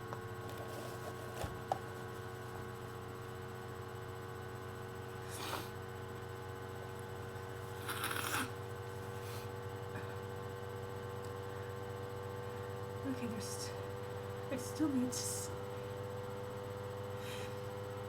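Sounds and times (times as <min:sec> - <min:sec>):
person clearing congested nose: 0:05.3 - 0:05.8, 0:07.8 - 0:08.6.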